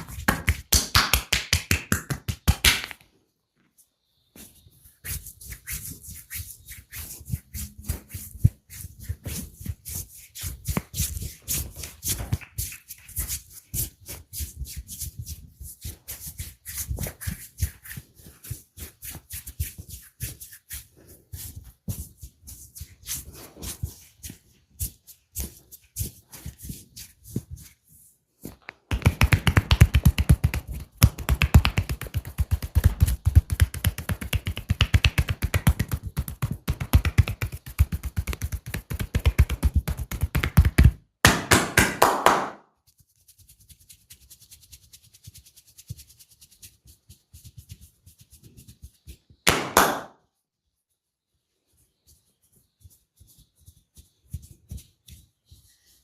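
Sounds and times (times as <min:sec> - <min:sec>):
hands tapping and slapping body: 0:00.0 - 0:03.1, 0:07.9 - 0:20.8, 0:28.4 - 0:42.6, 0:49.1 - 0:50.2.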